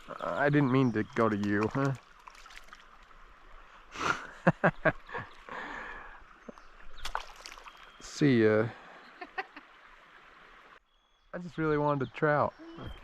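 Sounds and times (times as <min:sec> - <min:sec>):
creek water running: 0:00.0 - 0:10.8, 0:11.4 - 0:13.0.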